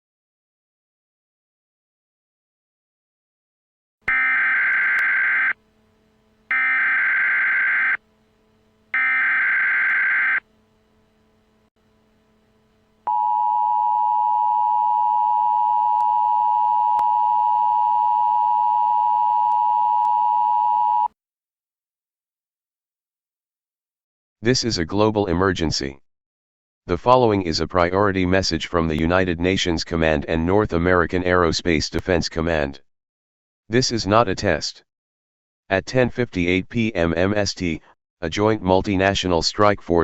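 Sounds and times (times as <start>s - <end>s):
steady attention tone: 4.1s - 20.1s.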